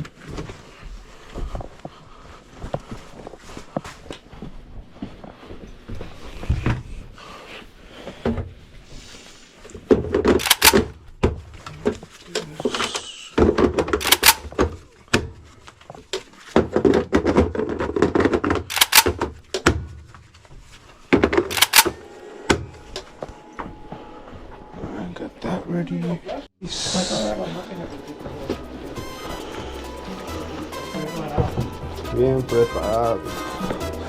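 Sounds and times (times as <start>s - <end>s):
shuffling and scraping: 0.0s - 9.8s, 14.0s - 16.9s, 18.7s - 25.6s.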